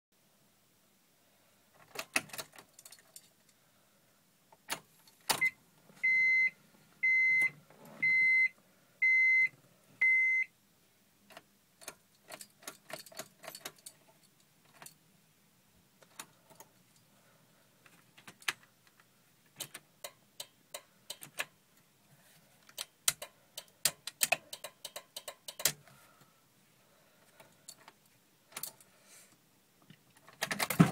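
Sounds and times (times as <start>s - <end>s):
car warning beeper: 5.4s - 10.5s
keys jangling: 12.3s - 14.9s
irregular clicks: 17.8s - 21.6s, 22.6s - 25.9s.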